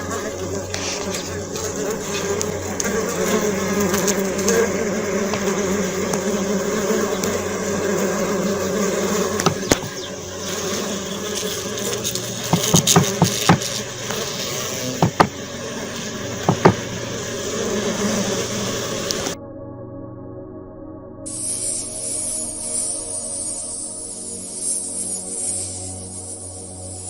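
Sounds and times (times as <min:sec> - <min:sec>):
buzzing drone: 0:00.0 - 0:27.0
sharp clicks and taps: 0:09.4 - 0:09.9, 0:12.5 - 0:13.8, 0:15.0 - 0:15.4, 0:16.4 - 0:16.8.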